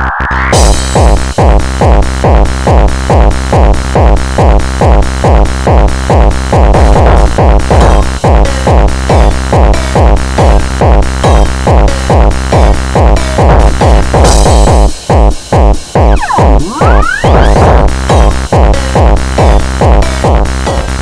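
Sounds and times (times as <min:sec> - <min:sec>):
electronic dance music: 0:15.6 - 0:21.0.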